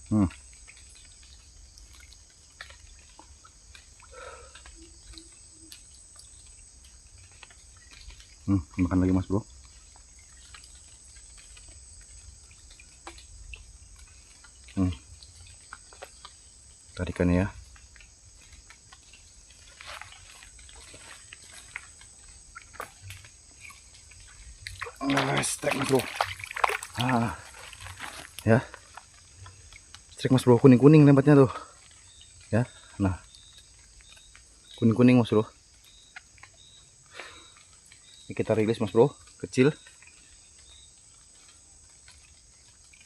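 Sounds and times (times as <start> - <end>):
crickets trilling: 0.0 - 43.0
high insect drone: 0.0 - 43.0
faint ticks: 9.4 - 24.8, 31.6 - 34.9.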